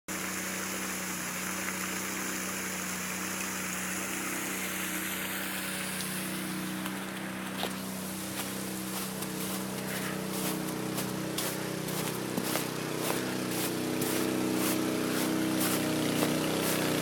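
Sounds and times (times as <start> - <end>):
rushing water: 0.1 - 17.0
water pump humming: 0.1 - 17.0.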